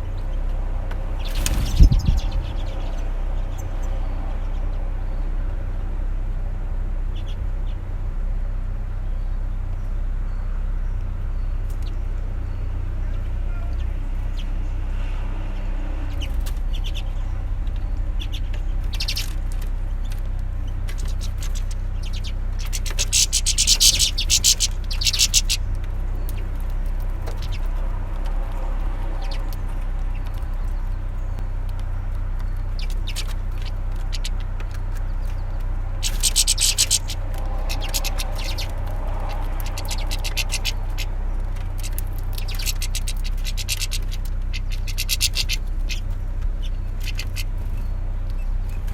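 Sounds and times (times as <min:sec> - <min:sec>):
steady low hum: 0:00.0 - 0:48.9
finches chattering: 0:01.1 - 0:04.6, 0:16.1 - 0:48.9.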